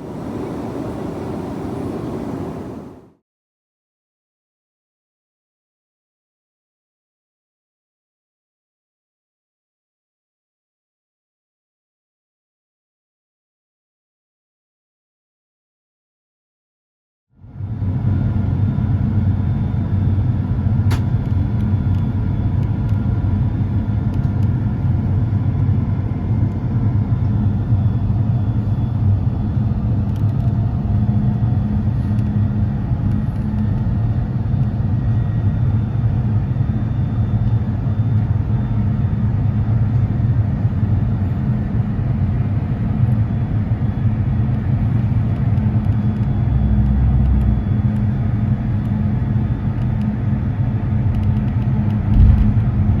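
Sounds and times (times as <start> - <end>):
airliner cabin engine rumble: 0.0 - 3.2, 17.5 - 53.0.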